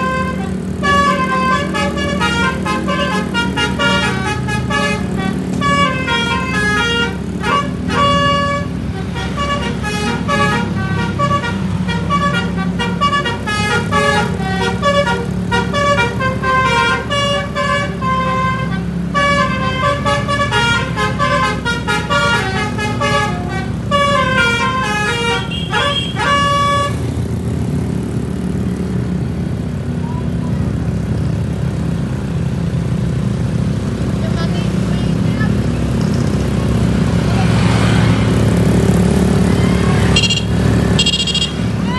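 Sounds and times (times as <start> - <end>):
bus horn playing melody: 0.0 - 27.2, 37.5 - 41.9
bus engine running: 0.0 - 41.9.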